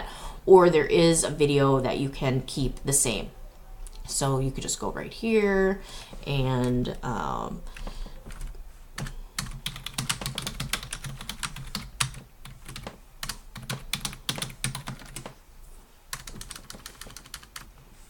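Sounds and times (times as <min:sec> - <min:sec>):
keyboard typing clicks: 0:07.8 - 0:15.4.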